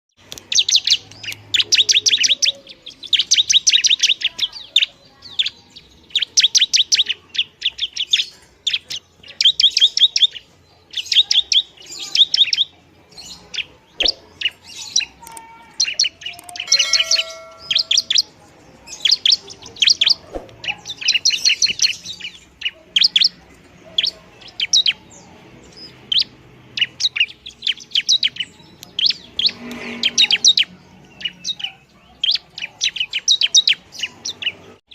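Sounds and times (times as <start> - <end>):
bird chip notes: 14.0 - 22.0.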